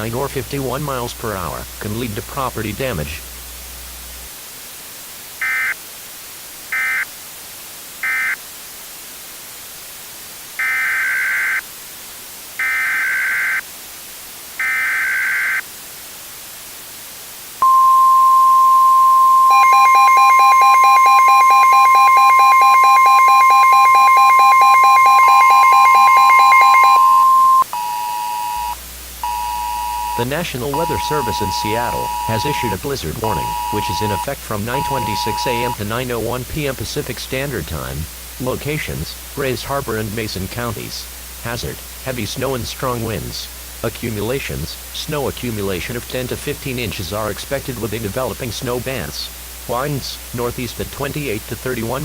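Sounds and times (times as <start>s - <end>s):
buzzy pulsing alert tone: 17.6s - 35.8s
steady alarm tone: 17.6s - 35.8s
warbling digital data bursts: 17.6s - 35.8s.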